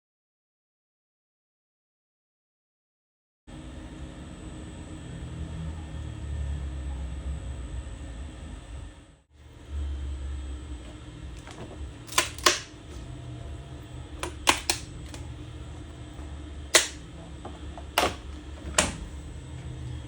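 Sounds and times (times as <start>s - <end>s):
sharp clicks: 14.2s - 15.2s, 16.8s - 17.0s.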